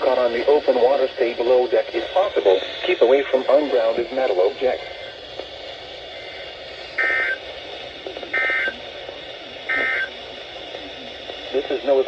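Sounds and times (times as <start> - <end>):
radio hiss: 0.0 - 12.0
buzzy data bursts: 6.0 - 12.0.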